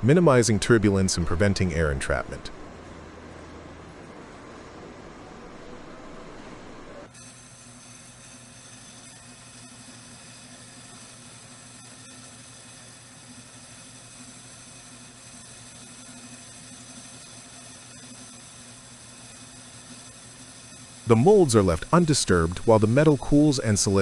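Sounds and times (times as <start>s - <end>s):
faint low hum: 0.0s - 7.1s
background hiss: 19.3s - 24.0s.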